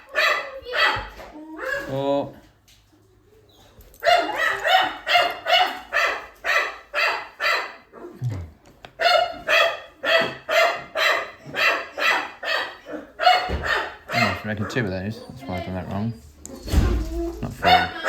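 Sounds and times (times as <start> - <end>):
dog barking: 0.0 - 2.0, 4.0 - 8.2, 9.0 - 15.7, 16.6 - 18.0.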